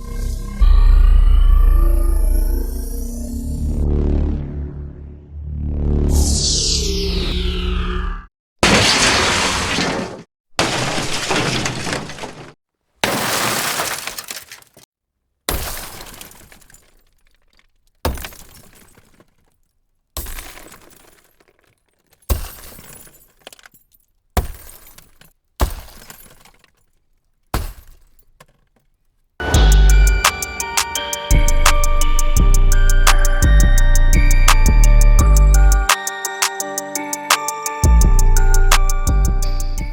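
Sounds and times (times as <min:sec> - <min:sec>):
car window glass smashing: 0:08.6 - 0:14.9, 0:15.5 - 0:19.6, 0:20.2 - 0:28.7.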